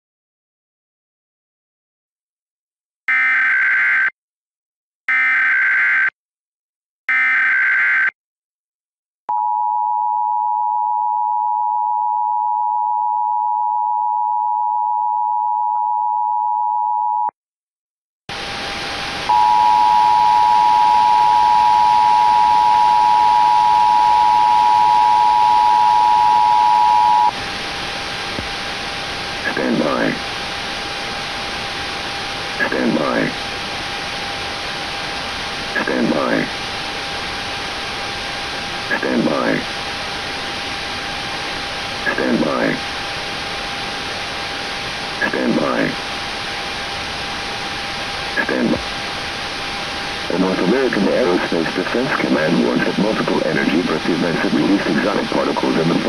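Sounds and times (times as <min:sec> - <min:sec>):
static hiss: 0:18.3 - 0:25.5, 0:26.9 - 0:56.0
two-tone attention signal: 0:19.3 - 0:27.3.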